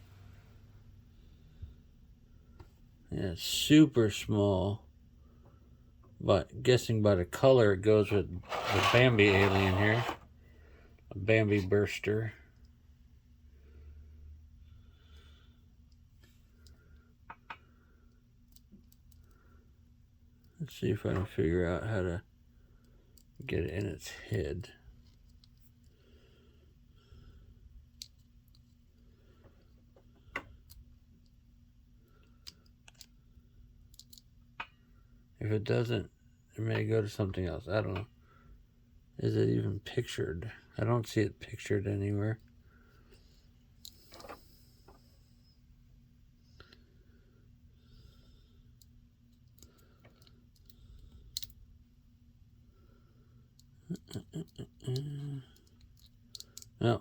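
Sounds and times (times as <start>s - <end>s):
plastic action figure pieces clicking: 33.9s - 34.2s, 54.0s - 56.8s.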